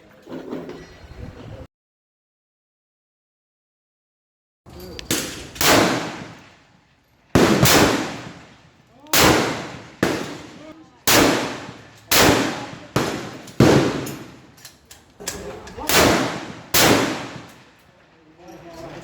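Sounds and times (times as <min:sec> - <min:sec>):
rifle shots echoing: 0:05.0 - 0:06.6, 0:07.3 - 0:14.5, 0:15.3 - 0:17.8.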